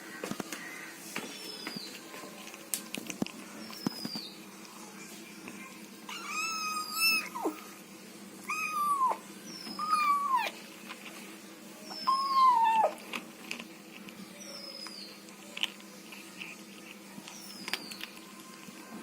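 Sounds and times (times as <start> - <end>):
kitten mewing: 6.1 - 7.6, 8.4 - 10.6, 11.9 - 13.0.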